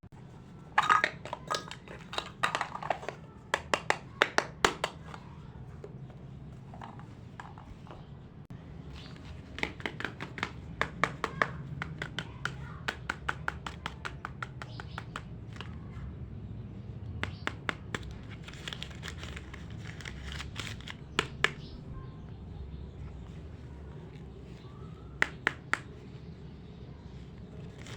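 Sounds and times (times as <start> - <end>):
plastic toy pieces clicking: 0.8 - 5.2
packaging crinkling: 18.1 - 21.2.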